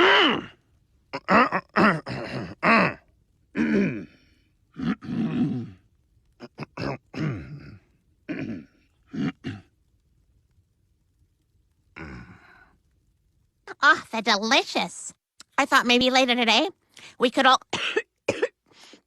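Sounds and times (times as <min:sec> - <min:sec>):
cartoon voice grunting and groaning: 0:01.2 - 0:04.2.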